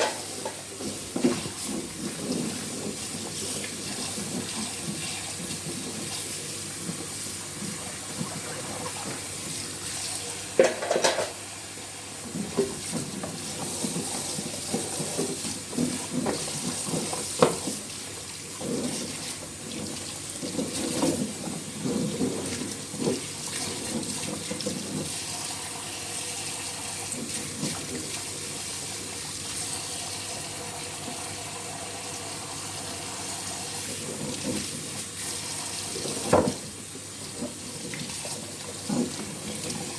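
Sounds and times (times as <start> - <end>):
dishes knocking and clattering: 0.0 - 0.6, 10.6 - 11.4
tap water running into sink: 0.0 - 39.9.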